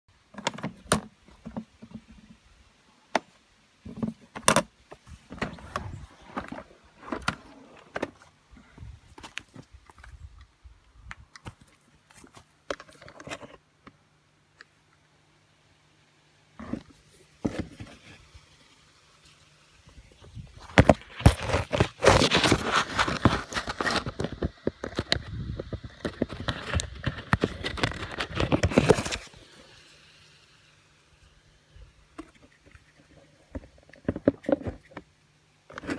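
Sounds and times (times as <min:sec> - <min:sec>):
mower parts clicking and knocking: 0:00.2 - 0:02.4, 0:03.1 - 0:08.3.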